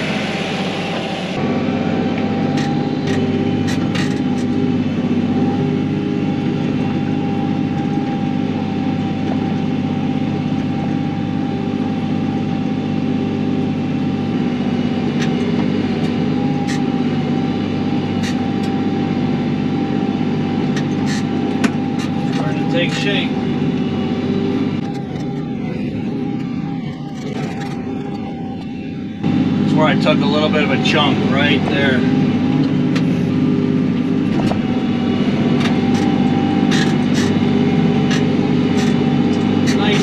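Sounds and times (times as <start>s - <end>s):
steady whine: 0.0s - 40.0s
tractor diesel engine running: 0.0s - 40.0s
sharp clicks and knocks: 38.0s - 40.0s.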